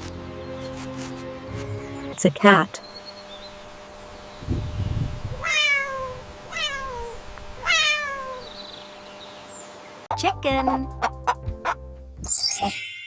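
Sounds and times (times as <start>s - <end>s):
cat meowing: 5.4s - 8.6s.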